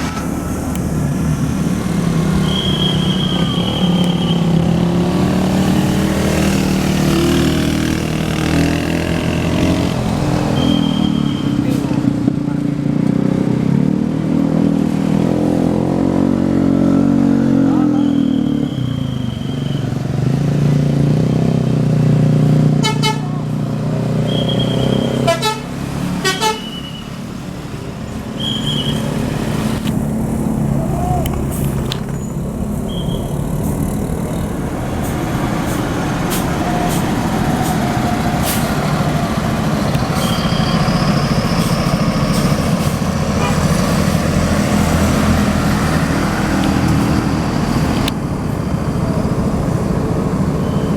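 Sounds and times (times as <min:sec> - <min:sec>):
bus engines passing: 0:00.0 - 0:50.9
multi-tone horn melody: 0:22.8 - 0:23.4, 0:25.1 - 0:26.8, 0:43.4 - 0:43.9.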